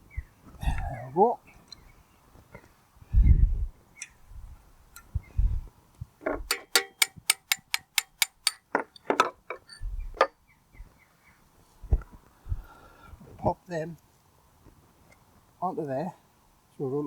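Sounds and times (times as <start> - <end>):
ratchet spanner clicking: 6.5 - 9.1.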